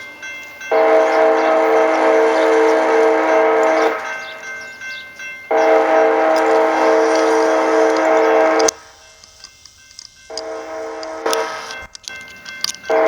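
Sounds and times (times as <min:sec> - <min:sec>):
locomotive air horn blasts: 0:00.7 - 0:04.4, 0:05.5 - 0:09.2, 0:10.3 - 0:12.1.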